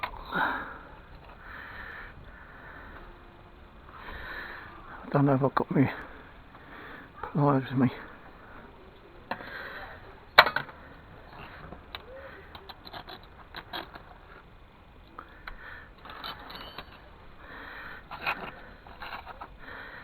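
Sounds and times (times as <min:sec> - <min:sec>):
metal tools clinking: 0:16.0 - 0:17.4, 0:18.0 - 0:19.6.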